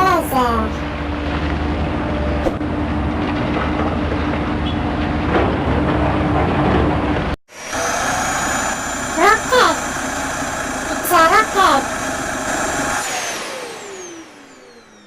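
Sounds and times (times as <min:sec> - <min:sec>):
diesel engine clattering: 0:09.1 - 0:13.0.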